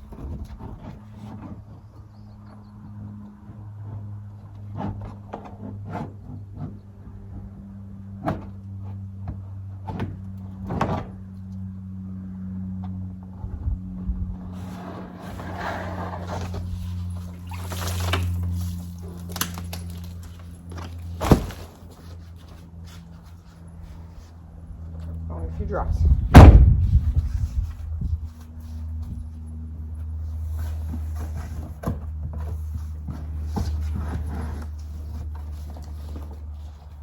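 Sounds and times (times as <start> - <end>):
loud thunk: 26.3 - 26.8.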